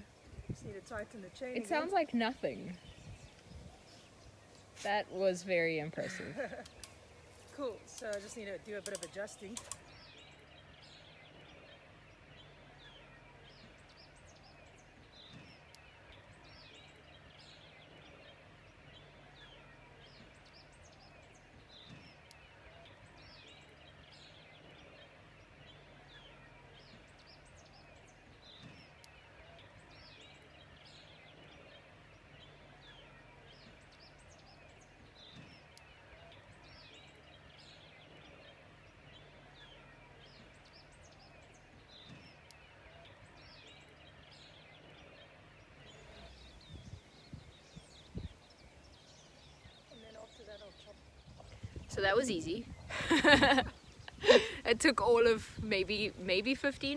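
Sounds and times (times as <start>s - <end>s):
small birds chirping: 0.0s - 56.9s.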